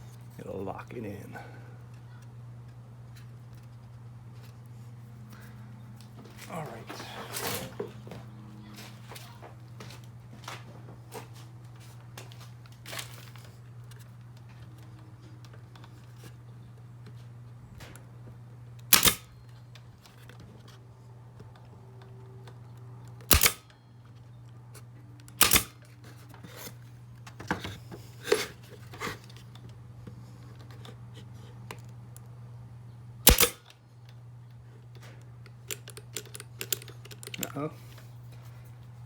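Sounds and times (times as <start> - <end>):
steady low hum: 0.0 - 39.0
pin nailer firing into wood: 18.9 - 19.3, 23.3 - 23.7, 25.4 - 25.8, 33.2 - 33.6.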